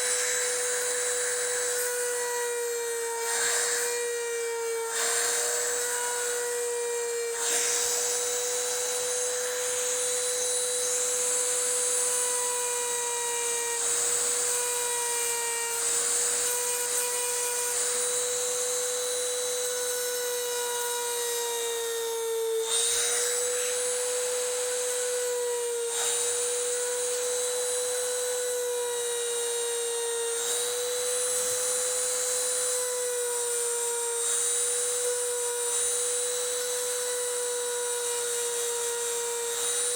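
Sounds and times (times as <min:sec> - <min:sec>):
electric grinder whining: 0:00.0 - 0:39.9.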